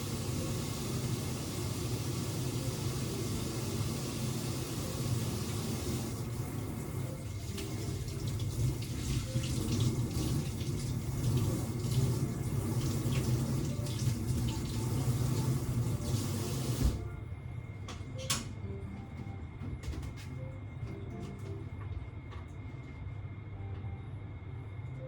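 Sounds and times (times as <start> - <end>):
tap water running into sink: 0.0 - 17.1.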